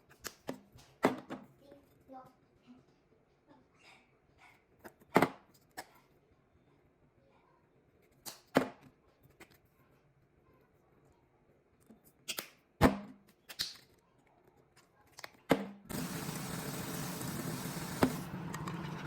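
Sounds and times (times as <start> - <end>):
kitchen appliance motor humming: 15.9 - 19.0.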